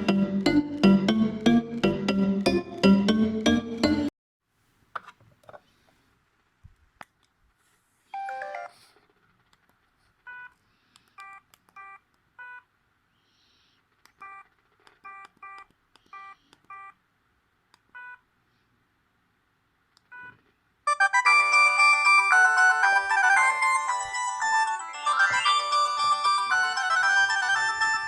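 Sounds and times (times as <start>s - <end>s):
phone ringtone melody: 8.2s - 8.7s, 20.9s - 28.0s.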